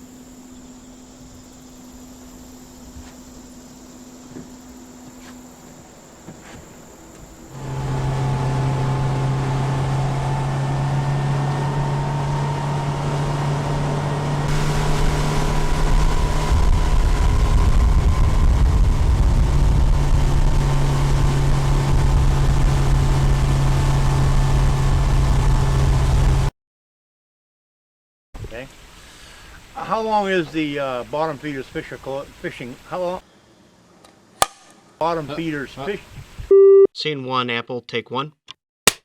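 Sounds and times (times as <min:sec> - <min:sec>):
outboard motor running: 0:00.0 - 0:26.5
rushing water and wind: 0:07.0 - 0:26.4.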